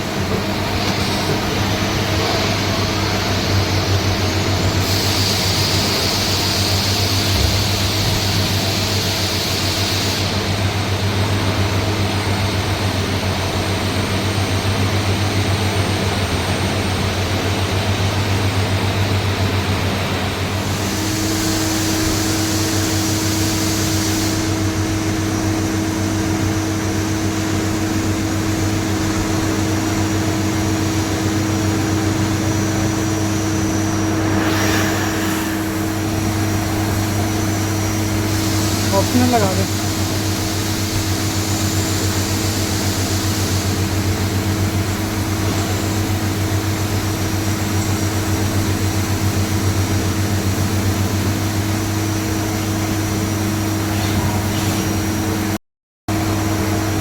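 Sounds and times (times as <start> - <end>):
mid-pitched whine: 30.6 - 40.2
high hiss: 32.0 - 43.9.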